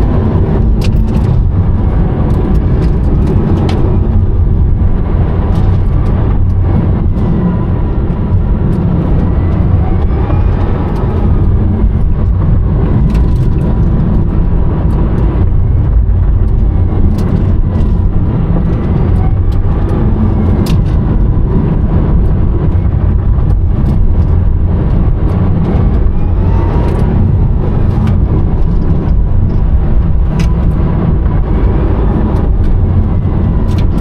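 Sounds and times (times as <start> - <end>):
electric motor whine: 0.0 - 34.0
road and wind noise rumble: 0.0 - 34.0.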